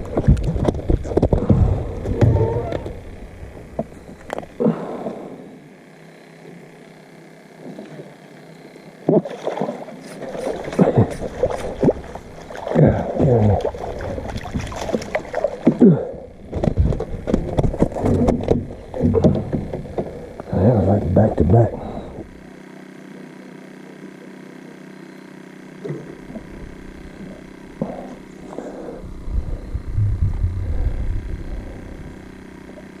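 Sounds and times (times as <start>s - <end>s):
clatter and knocks in boat: 0.0s - 3.0s, 13.6s - 15.8s, 16.4s - 20.4s
water sounds: 0.0s - 4.8s, 9.0s - 22.4s.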